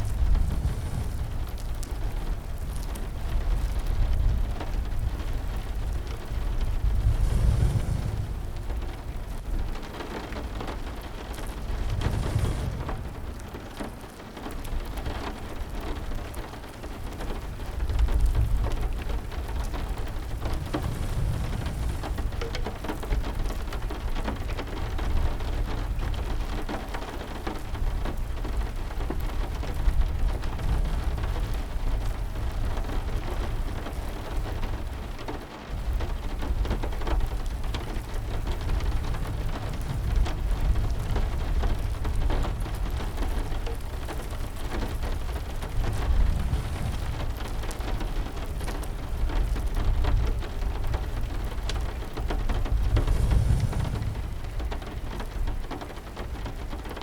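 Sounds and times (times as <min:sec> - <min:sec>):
deep rumble: 0:00.0 - 0:14.0, 0:18.0 - 0:24.2, 0:35.8 - 0:56.5
steady rain: 0:00.0 - 0:57.0.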